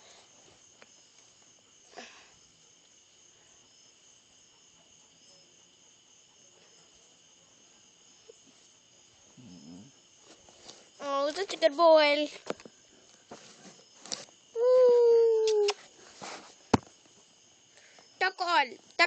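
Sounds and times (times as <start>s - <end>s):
faint high-pitched ringing: 3.3s - 7.6s.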